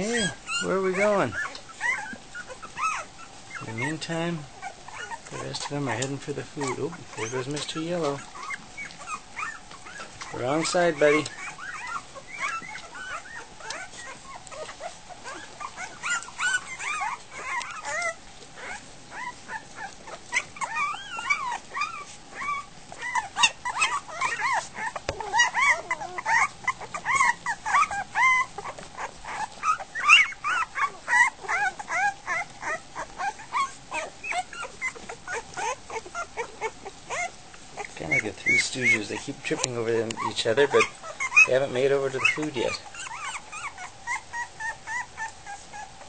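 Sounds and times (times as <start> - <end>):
puppies whimpering and squealing: 0.0 - 46.0.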